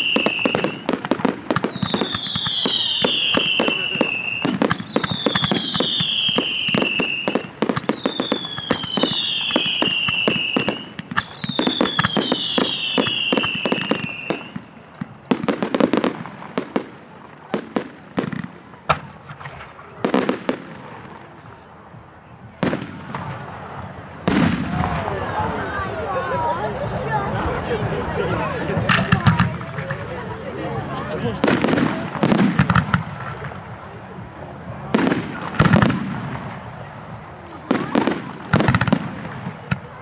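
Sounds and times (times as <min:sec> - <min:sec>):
firework whistles: 0:00.0 - 0:14.8
firework bangs: 0:00.0 - 0:25.5, 0:28.8 - 0:40.0
firework crackling: 0:00.0 - 0:25.8, 0:28.7 - 0:40.0.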